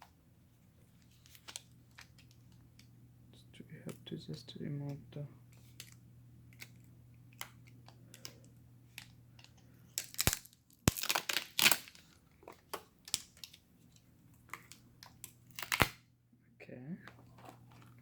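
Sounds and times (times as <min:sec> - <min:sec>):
plastic crinkling and tearing: 0:07.4 - 0:13.6, 0:14.5 - 0:16.0.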